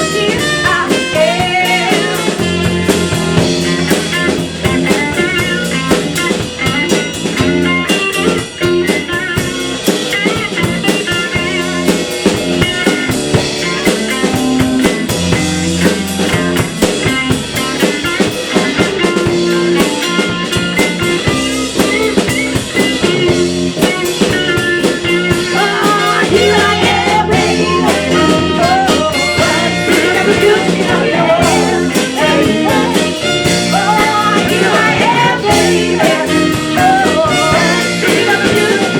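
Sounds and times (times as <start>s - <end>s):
live blues-rock band playing: 0.0s - 38.9s.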